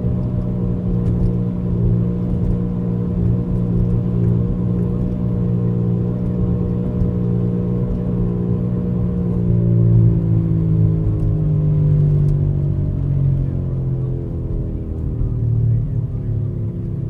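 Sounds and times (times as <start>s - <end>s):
car droning hum while driving: 0.0s - 17.0s.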